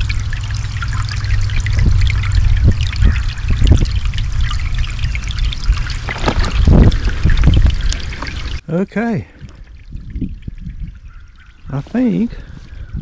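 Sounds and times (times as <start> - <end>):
stream trickling and splashing: 0.0 - 13.0.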